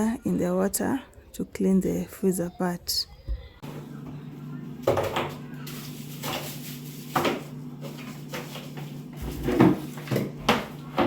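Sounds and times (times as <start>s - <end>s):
things knocking and clattering: 4.8s - 11.0s.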